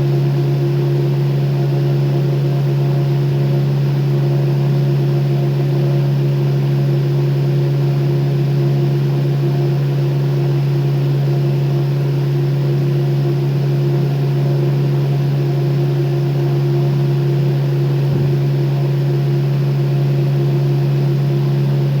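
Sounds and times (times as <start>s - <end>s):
electric fan running: 0.0s - 22.0s.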